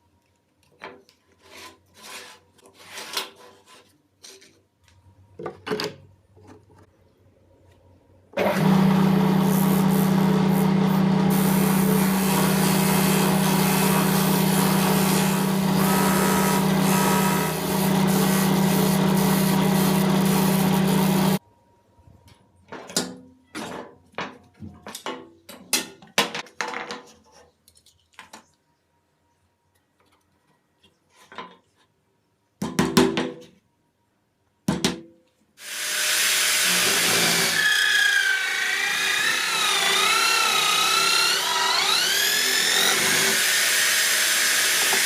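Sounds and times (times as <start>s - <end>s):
electric power tool running: 8.4s - 21.4s, 35.6s - 45.0s.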